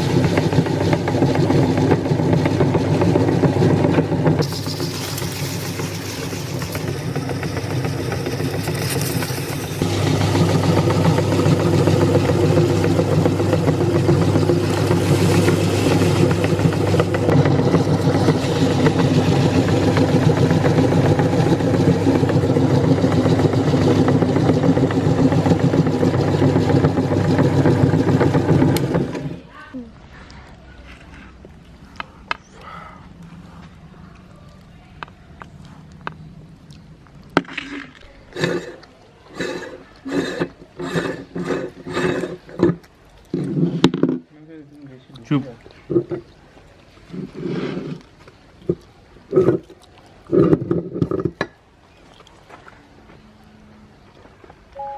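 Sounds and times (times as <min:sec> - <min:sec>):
electric meat grinder running: 0:00.0 - 0:29.4.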